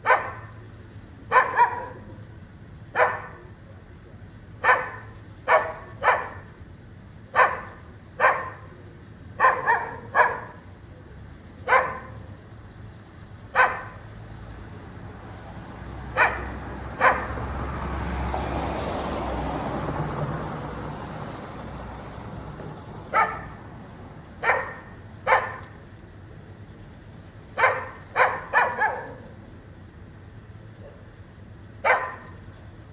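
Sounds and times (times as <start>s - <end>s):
dog barking: 0.0s - 0.6s, 1.3s - 2.2s, 2.9s - 3.5s, 4.6s - 6.6s, 7.3s - 8.8s, 9.4s - 10.7s, 11.6s - 12.3s, 13.5s - 14.1s, 16.1s - 17.5s, 23.1s - 23.6s, 24.4s - 25.8s, 27.6s - 29.4s, 30.8s - 31.1s, 31.8s - 32.4s
vehicle passing: 0.0s - 32.9s.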